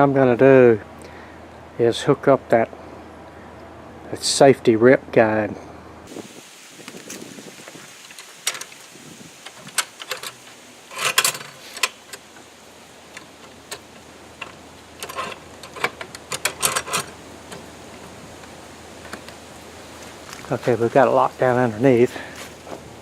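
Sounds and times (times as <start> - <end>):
metal clicks and clinks: 9.4 - 12.3, 13.1 - 18.1.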